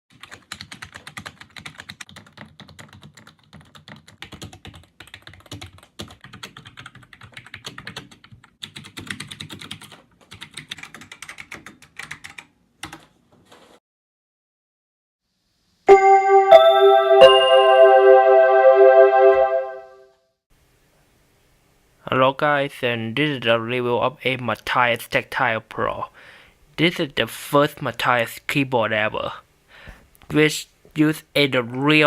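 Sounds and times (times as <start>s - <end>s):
mechanical keyboard typing: 0.1s - 13.1s
electric piano chord: 15.9s - 20.0s.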